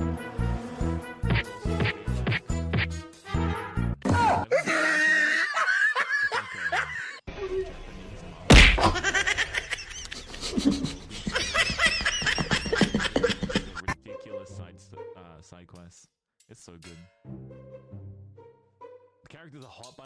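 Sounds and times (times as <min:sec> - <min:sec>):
person laughing: 0:04.5 - 0:07.2, 0:08.8 - 0:14.0.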